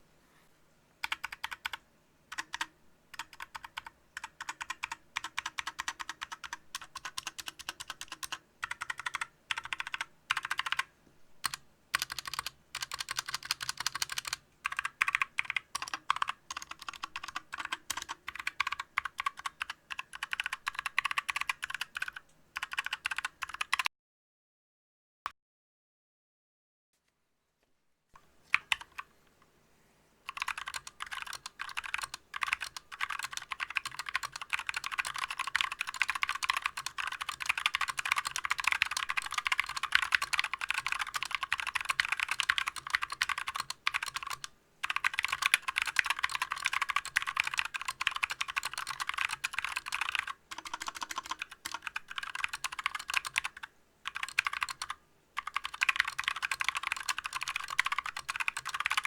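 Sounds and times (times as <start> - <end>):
mechanical keyboard typing: 1.0 - 23.9, 28.5 - 29.1, 30.3 - 59.0.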